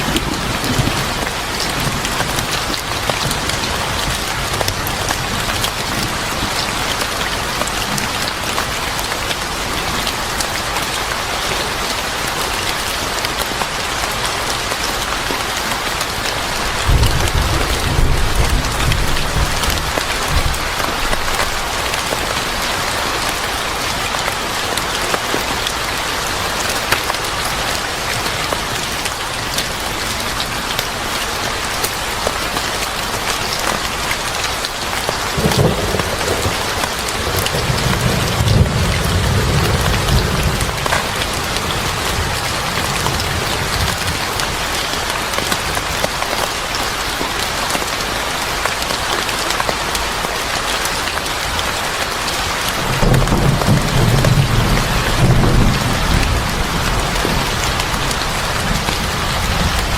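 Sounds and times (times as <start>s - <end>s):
heavy rain falling: 0.0s - 59.9s
low rumble of thunder: 16.7s - 21.7s, 35.4s - 44.2s, 52.8s - 59.9s.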